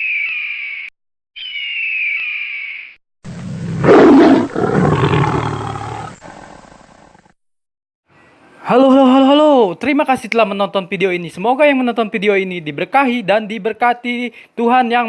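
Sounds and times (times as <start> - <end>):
high falling whistling calls: 0.0 - 3.0.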